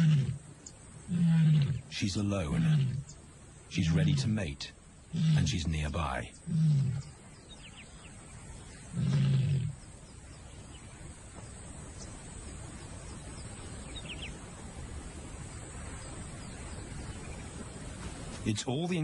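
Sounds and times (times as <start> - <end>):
lioness low call: 0.0 - 7.2, 8.7 - 9.9
low background noise: 0.0 - 19.0.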